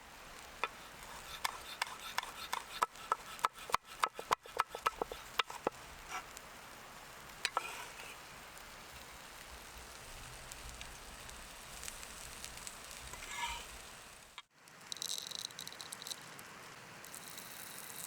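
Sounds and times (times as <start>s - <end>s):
campfire crackling: 0.0s - 18.0s
knife chopping on wooden board: 0.6s - 5.8s.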